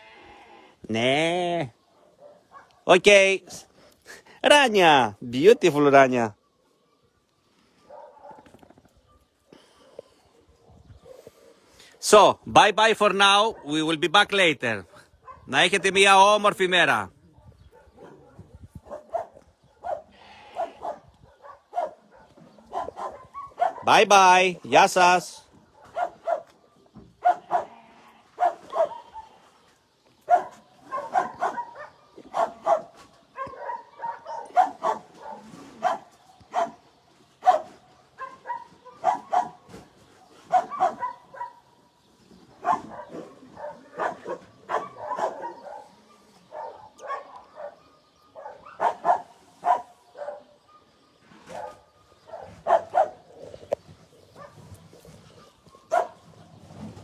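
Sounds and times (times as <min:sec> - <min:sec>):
dogs barking: 0:01.9 - 0:03.7, 0:07.8 - 0:12.2, 0:13.2 - 0:14.1, 0:14.9 - 0:16.5, 0:17.3 - 0:24.1, 0:25.5 - 0:27.8, 0:28.4 - 0:29.4, 0:30.2 - 0:41.9, 0:42.5 - 0:53.6, 0:54.2 - 0:56.4.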